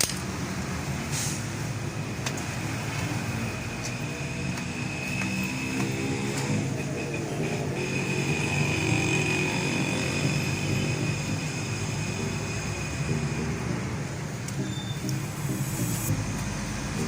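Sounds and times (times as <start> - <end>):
thin high tone: 14.6 - 16.2.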